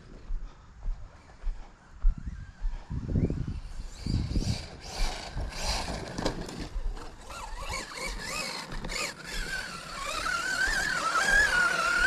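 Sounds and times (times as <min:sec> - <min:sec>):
wind rumble on microphone: 0:00.0 - 0:08.4
electric toy motor whining: 0:03.6 - 0:12.0.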